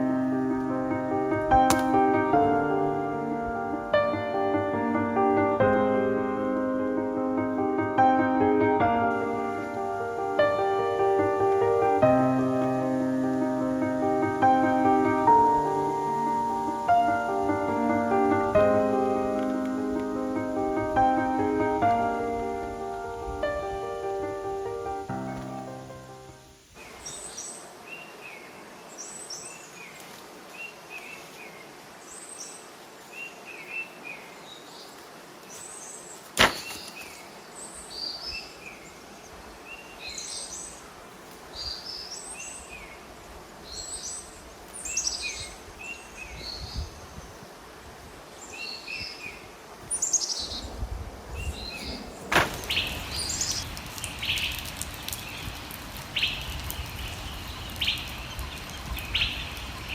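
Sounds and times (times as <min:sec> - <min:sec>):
birds chirping and trilling: 0:30.6 - 0:47.5, 0:48.3 - 0:55.5, 0:56.2 - 0:59.9.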